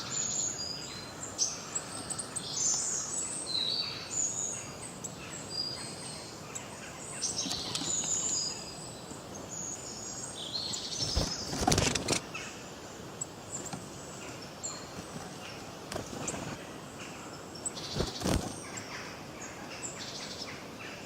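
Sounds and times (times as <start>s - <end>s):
steady background hiss: 0.0s - 21.0s
birds chirping and whistling: 5.4s - 12.2s
loud rustling: 11.0s - 12.2s.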